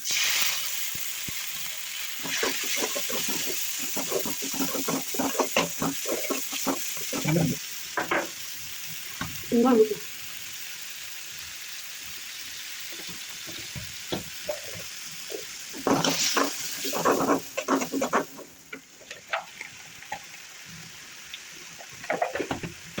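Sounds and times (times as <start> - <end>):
curry sizzling in a pan: 0.0 - 23.0
spatula scraping a pan: 2.1 - 8.1, 14.4 - 19.8.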